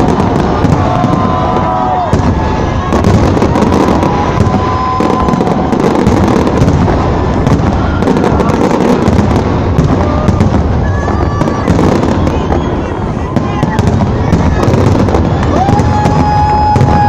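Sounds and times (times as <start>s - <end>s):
fireworks bangs and crackling: 0.0s - 17.0s
fireworks whistling: 0.0s - 17.0s.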